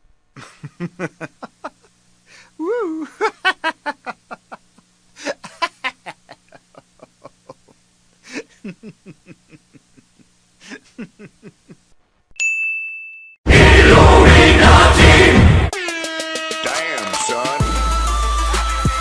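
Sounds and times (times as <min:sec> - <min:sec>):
person laughing: 0:00.4 - 0:02.0, 0:02.6 - 0:12.0
bell-like ding: 0:12.4 - 0:13.4.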